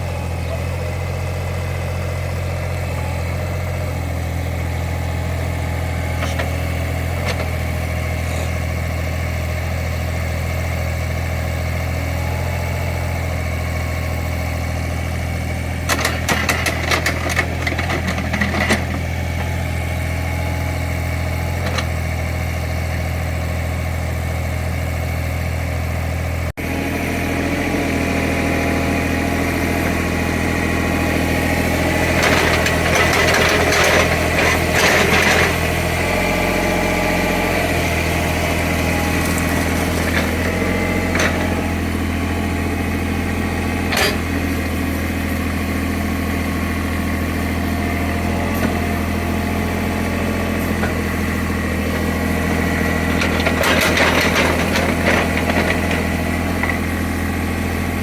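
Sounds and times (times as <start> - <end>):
excavator diesel engine running: 0.0 - 58.0
scraping and clatter: 32.1 - 35.8, 53.0 - 56.8.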